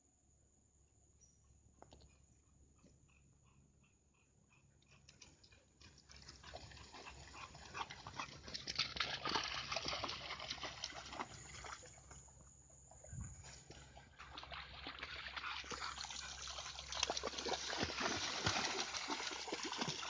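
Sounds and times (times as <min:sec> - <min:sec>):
dog splashing in water: 0:05.8 - 0:12.2, 0:13.7 - 0:20.0.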